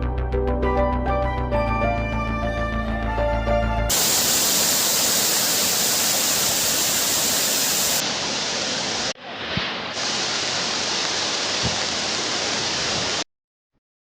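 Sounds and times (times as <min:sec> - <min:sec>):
background music: 0:00.0 - 0:03.9
waterfall rushing: 0:03.9 - 0:13.2.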